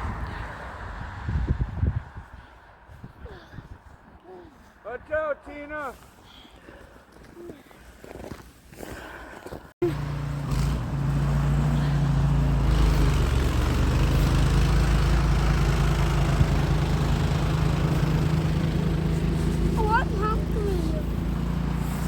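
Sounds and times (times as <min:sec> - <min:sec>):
engine running: 0:09.8 - 0:22.0.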